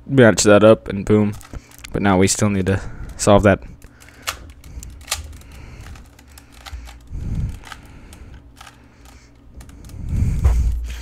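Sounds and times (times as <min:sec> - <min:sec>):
puzzle cube clicking: 0:03.8 - 0:10.0.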